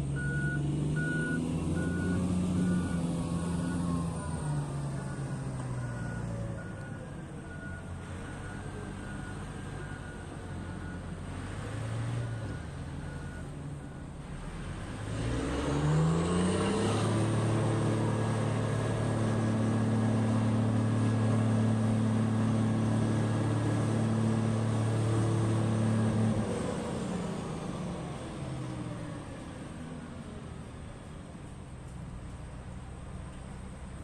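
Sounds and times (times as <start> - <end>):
large diesel engine revving: 0.0 - 29.8.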